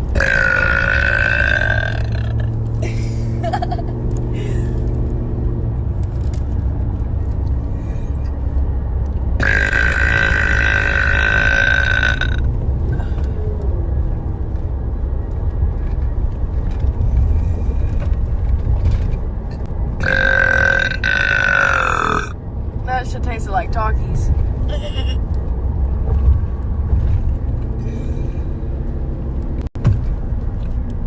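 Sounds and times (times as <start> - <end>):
woman burping: 0.1 - 2.5, 9.4 - 12.5, 20.0 - 22.3, 24.7 - 25.2.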